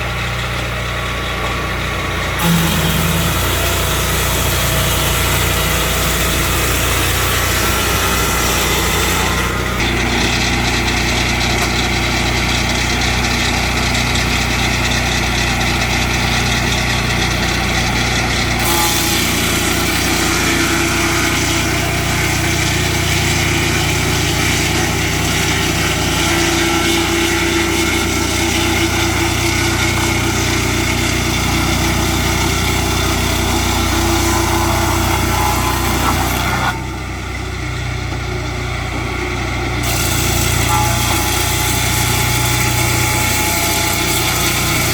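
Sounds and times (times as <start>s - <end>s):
sawmill engine running: 0.0s - 44.9s.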